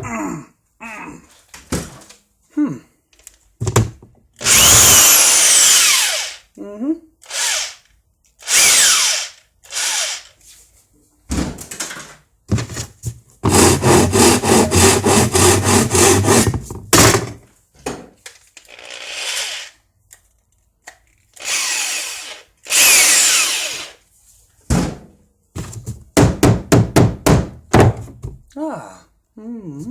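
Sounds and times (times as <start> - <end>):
fast rhythmic tool noise: 13.5 - 16.6
tool rasping strokes: 13.5 - 16.6.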